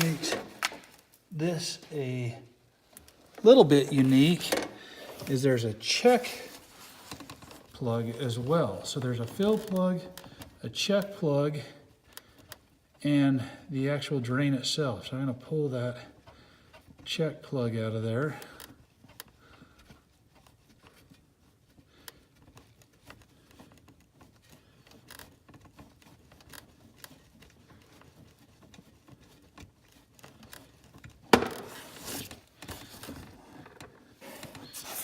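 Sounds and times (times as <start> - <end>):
rustling and clattering: 0.0 - 1.9, 2.6 - 10.6, 18.5 - 35.0
faint clicks and handling noises: 0.0 - 13.2, 14.0 - 35.0.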